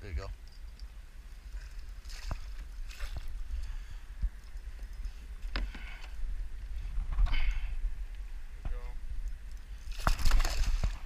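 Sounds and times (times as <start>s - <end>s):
water splashing: 9.8s - 11.0s.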